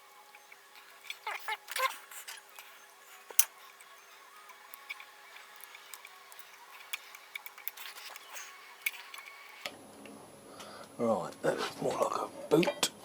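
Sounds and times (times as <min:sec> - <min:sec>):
small metallic clicks and taps: 0:00.3 - 0:09.7.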